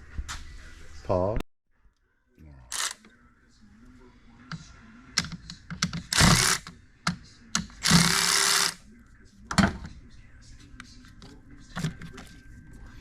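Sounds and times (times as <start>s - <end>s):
power tool running: 2.7s - 3.0s, 6.1s - 6.7s, 7.8s - 8.8s.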